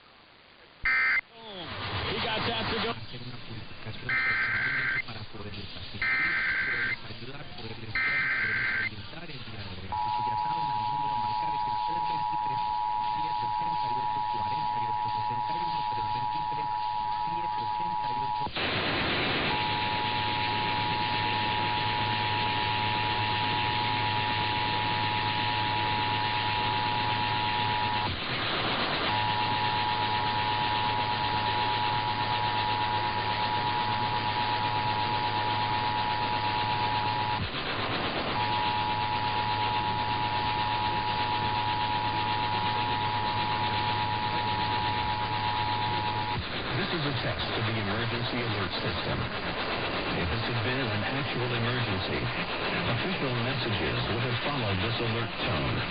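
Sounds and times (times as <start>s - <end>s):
radio static: 0.0s - 55.9s
two-tone alert signal: 0.9s - 1.2s, 4.1s - 5.0s, 6.0s - 7.0s, 8.0s - 8.9s.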